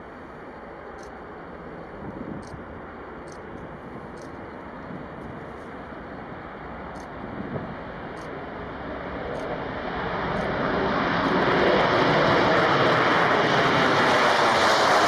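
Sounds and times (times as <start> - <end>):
jet engine roar: 5.9 - 15.0.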